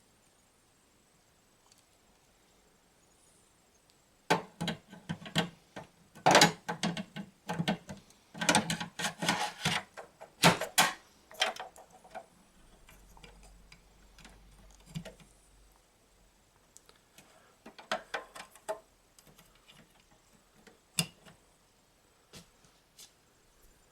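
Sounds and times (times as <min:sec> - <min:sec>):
clicks and knocks on computer case: 0:04.3 - 0:12.2.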